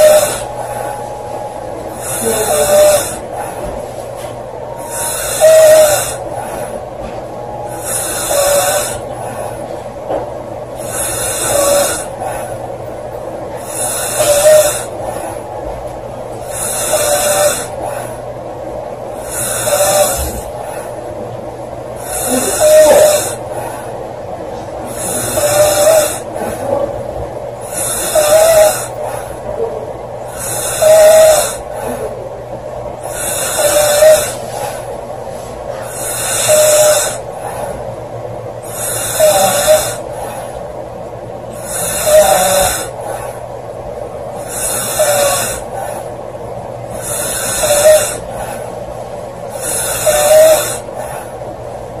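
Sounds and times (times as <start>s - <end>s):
woman snoring loudly: 0.0s - 1.1s, 1.9s - 3.7s, 4.7s - 6.9s, 7.7s - 9.7s, 10.8s - 12.6s, 13.6s - 15.6s, 16.4s - 18.2s, 19.1s - 21.0s, 22.0s - 24.0s, 24.9s - 26.7s, 27.6s - 29.4s, 30.3s - 32.1s, 33.0s - 34.9s, 35.8s - 37.8s, 38.6s - 40.6s, 41.5s - 43.4s, 44.4s - 46.1s, 46.9s - 48.7s, 49.5s - 51.3s.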